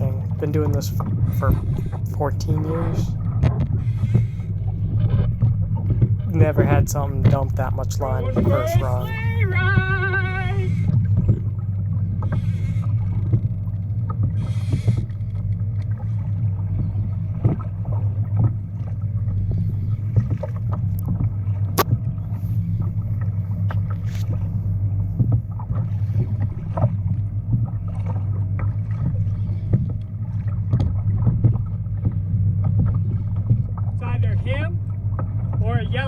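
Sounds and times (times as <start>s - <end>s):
small splashes: 0.0s - 36.0s
water rushing past a hull: 0.0s - 36.0s
knocks against a boat: 3.2s - 7.4s, 16.7s - 34.0s.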